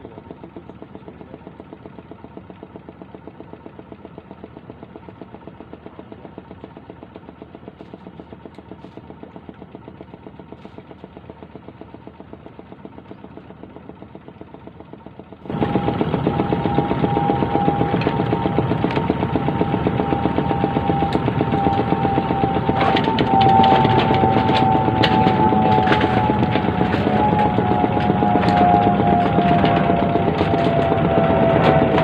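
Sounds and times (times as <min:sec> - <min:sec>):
small engine running: 0:00.0 - 0:32.0
steady whine: 0:15.4 - 0:32.0.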